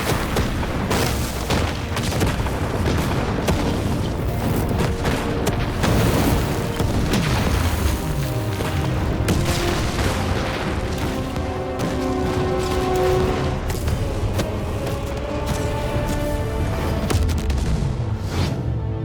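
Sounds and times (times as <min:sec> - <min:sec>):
booms and crashes: 0:00.0 - 0:14.3
dramatic film score: 0:00.0 - 0:19.0.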